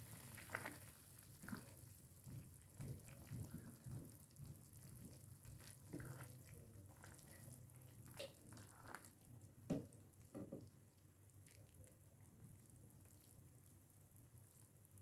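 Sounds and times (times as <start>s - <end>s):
faint kitchen knocks and clinks: 9.7s - 10.7s.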